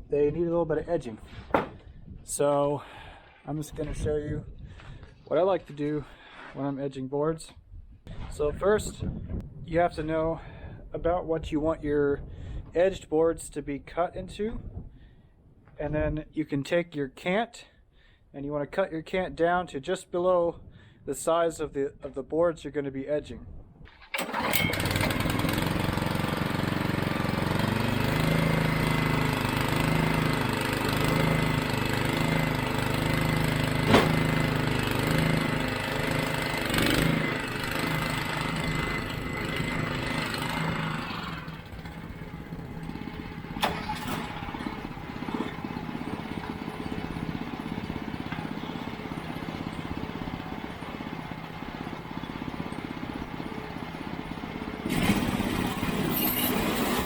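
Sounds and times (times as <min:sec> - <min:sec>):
sharp knocks: 0:01.5 - 0:01.8, 0:33.9 - 0:34.3
sawmill gas engine running: 0:24.2 - 0:57.0
high blade whine: 0:54.8 - 0:57.0.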